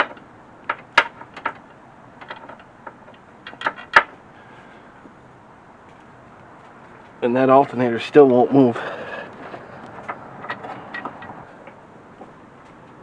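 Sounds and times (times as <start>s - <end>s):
metal tools clinking on engine parts: 9.5s - 11.8s.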